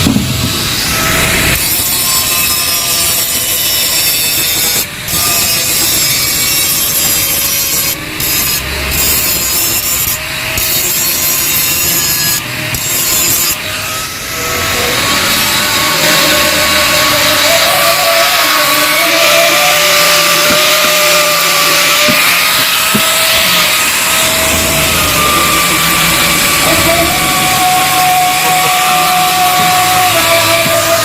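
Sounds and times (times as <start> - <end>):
angle grinder cutting steel: 0.0 - 31.0.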